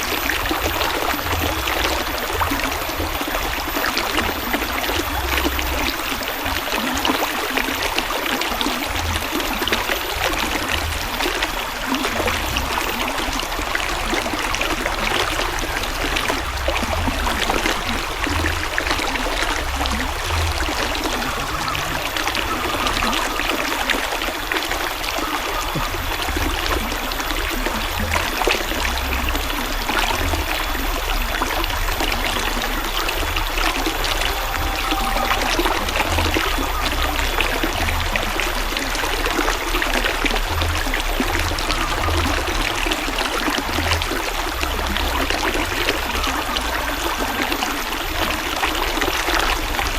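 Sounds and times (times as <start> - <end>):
river water babbling: 0.0 - 49.9.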